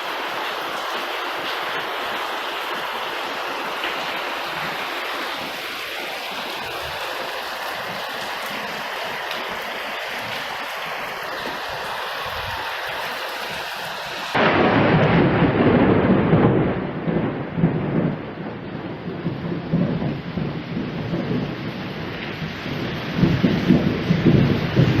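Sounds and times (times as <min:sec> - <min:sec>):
rain hissing: 0:00.0 - 0:25.0
thunder rolling: 0:14.3 - 0:25.0.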